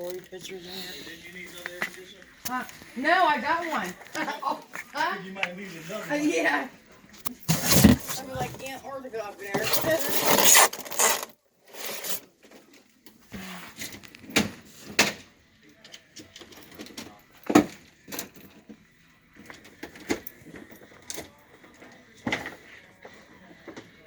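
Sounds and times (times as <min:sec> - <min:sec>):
faint voices: 0:00.0 - 0:07.2, 0:15.2 - 0:24.0
hard objects knocking and clattering: 0:07.2 - 0:08.6.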